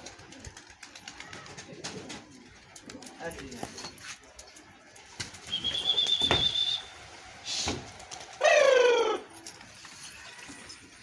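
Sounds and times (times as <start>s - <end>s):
wings fluttering: 0.0s - 3.0s, 4.2s - 10.8s
pigeon falling call: 5.4s - 9.4s
high thin whistle: 5.5s - 6.9s.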